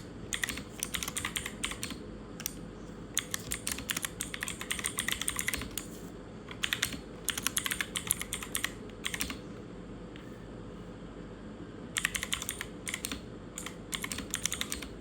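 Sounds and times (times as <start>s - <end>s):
mechanical keyboard typing: 0.3s - 2.6s, 3.2s - 9.4s, 12.0s - 15.0s.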